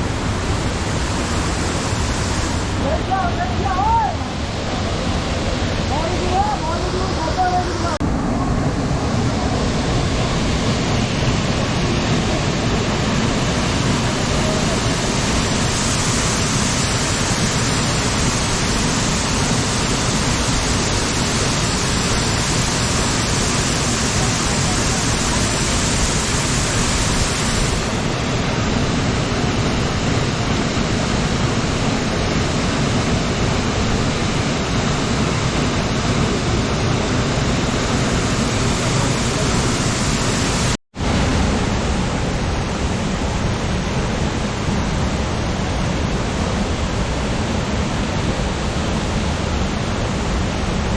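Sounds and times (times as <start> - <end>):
waterfall rushing: 0.0 - 50.9.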